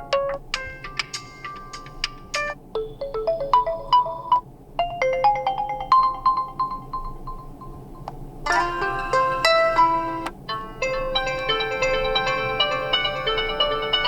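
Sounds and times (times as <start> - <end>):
electronic ringtone melody: 0.0 - 7.9, 8.5 - 14.0.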